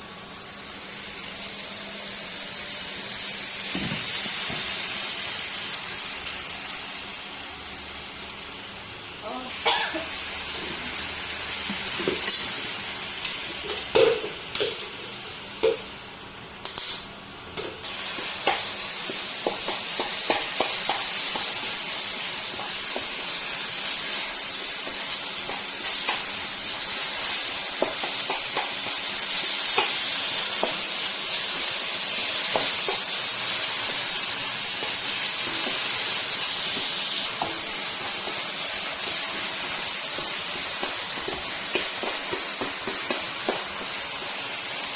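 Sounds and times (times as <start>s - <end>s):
food sizzling in a pan: 0.0s - 17.2s, 17.8s - 44.9s
pots and utensils knocking: 3.7s - 4.7s, 13.6s - 14.9s, 39.3s - 43.9s.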